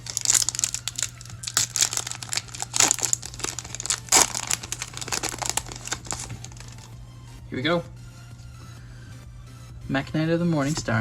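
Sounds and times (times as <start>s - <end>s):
foil wrapper crinkling and tearing: 0.0s - 6.9s.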